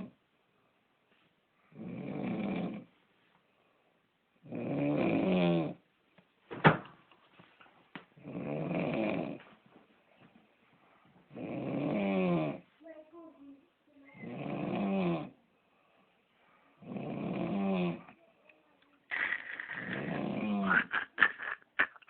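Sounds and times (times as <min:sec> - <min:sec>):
rasping snore: 0:01.7 - 0:02.9, 0:04.5 - 0:05.8, 0:08.2 - 0:09.4, 0:11.3 - 0:12.6, 0:14.2 - 0:15.4, 0:16.8 - 0:18.1, 0:19.1 - 0:21.0.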